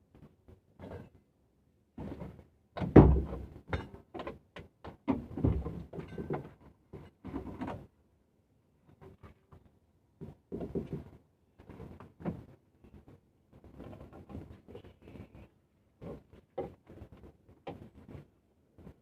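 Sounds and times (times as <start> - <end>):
hard objects clunking and rattling: 2.0 - 7.9, 10.2 - 12.6.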